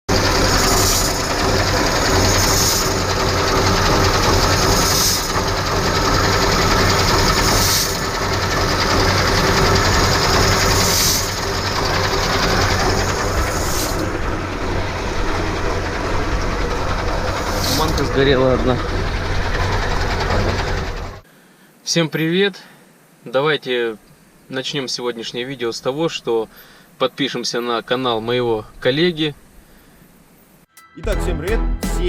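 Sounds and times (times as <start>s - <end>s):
truck diesel engine running: 0.0s - 21.2s
air hiss bursts: 0.3s - 5.4s, 7.4s - 8.1s, 10.5s - 12.0s, 12.6s - 14.2s.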